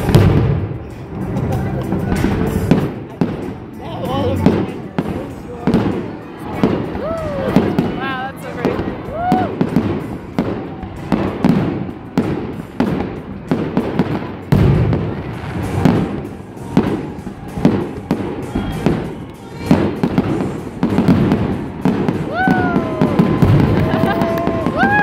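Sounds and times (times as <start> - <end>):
background music: 0.0 - 25.0
fireworks bursting: 0.0 - 25.0.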